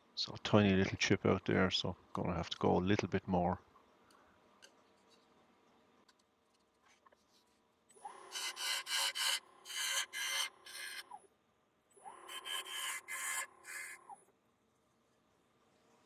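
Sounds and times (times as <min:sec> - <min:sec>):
wood lathe whine: 0:08.0 - 0:11.2, 0:12.0 - 0:14.2
gouge scraping wood bowl: 0:08.3 - 0:11.0, 0:12.3 - 0:14.0.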